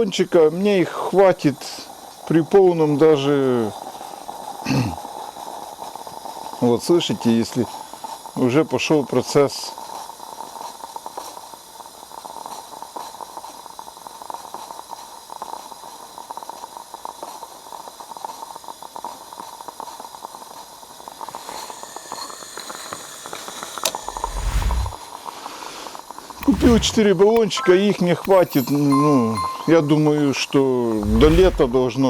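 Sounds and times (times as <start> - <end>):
coffee pot bubbling and gurgling: 18.9 - 24.2
gas burner hissing: 20.2 - 27.2
sharp click: 23.6 - 25.0, 26.4 - 27.5, 31.0 - 31.9.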